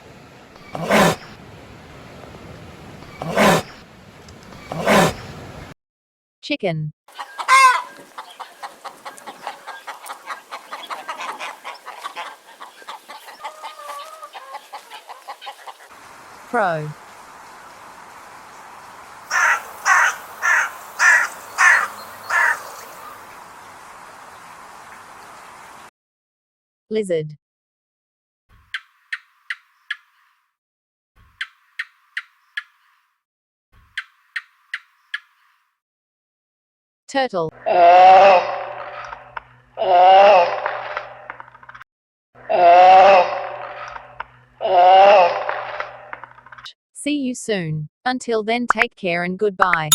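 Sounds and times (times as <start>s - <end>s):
chicken clucking: 7.1s - 15.9s
chicken squawk: 7.1s - 16.0s, 19.3s - 23.2s.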